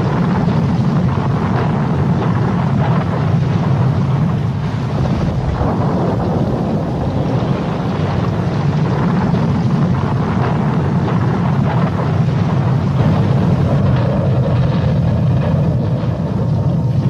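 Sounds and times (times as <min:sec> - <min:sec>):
heavy low rumble: 0:00.0 - 0:17.0
hurricane wind and sea rushing: 0:00.0 - 0:17.0.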